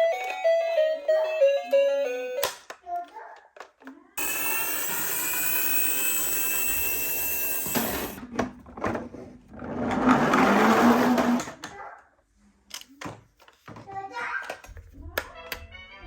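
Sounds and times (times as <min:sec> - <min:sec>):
toy ambulance motor whirring: 0:04.2 - 0:08.2.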